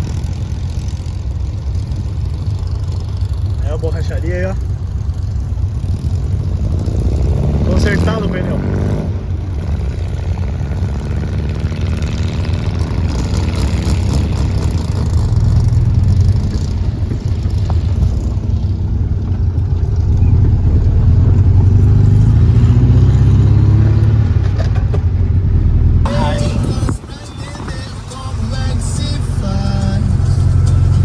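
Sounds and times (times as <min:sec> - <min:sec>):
car engine driving: 0:00.0 - 0:31.0.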